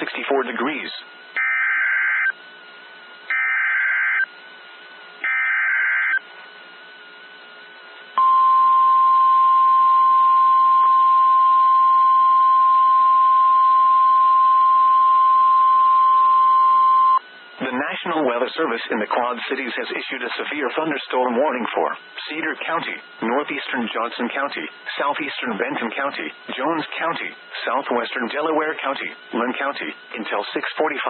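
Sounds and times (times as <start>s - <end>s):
faint radio hiss: 0.0s - 1.3s, 17.2s - 31.0s
steady warning alarm tone: 1.4s - 2.4s, 3.3s - 4.3s, 5.2s - 6.2s, 8.2s - 17.2s.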